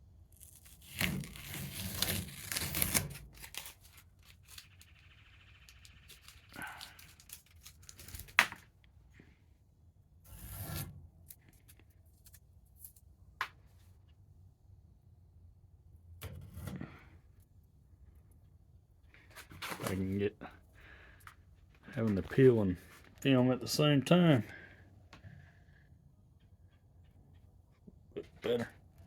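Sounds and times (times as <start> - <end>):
tape ripping: 0.3 - 4.9, 6.1 - 8.7
tape rasping as peeled: 0.3 - 5.0, 5.8 - 8.7, 10.3 - 13.0.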